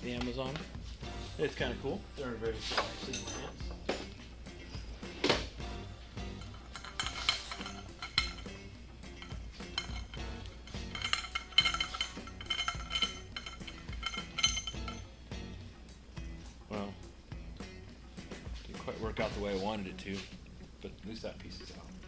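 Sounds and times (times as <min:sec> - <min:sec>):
steel hand tools clinking on metal: 0:02.6 - 0:03.8, 0:06.1 - 0:15.2
ringing metallic clinks: 0:03.0 - 0:03.7, 0:06.2 - 0:15.2.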